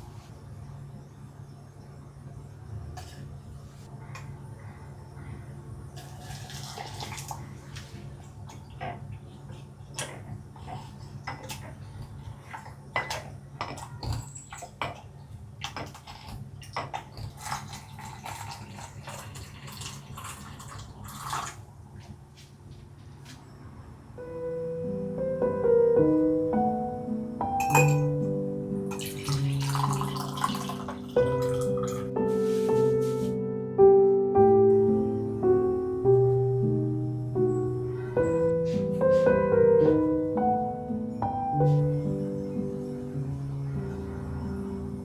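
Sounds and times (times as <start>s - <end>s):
soft piano music: 0.0s - 16.0s, 23.5s - 45.0s
dishes and utensils clinking: 10.0s - 15.1s, 27.6s - 28.2s, 28.9s - 33.3s.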